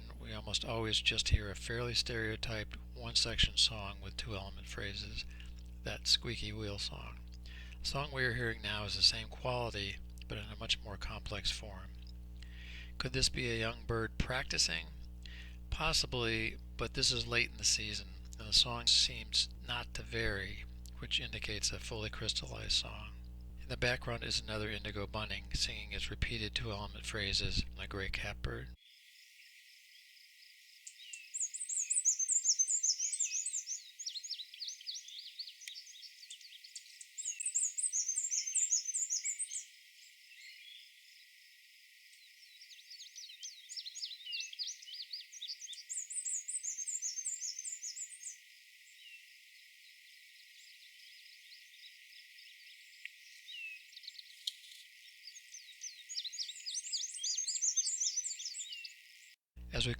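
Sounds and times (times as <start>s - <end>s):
high squeaky warbler song: 0.0s - 28.8s, 30.9s - 41.0s, 42.2s - 49.2s, 50.6s - 59.9s
narrator speaking: 0.0s - 28.8s, 59.7s - 59.9s
catbird calling: 31.3s - 39.7s, 42.8s - 48.4s, 53.1s - 59.0s.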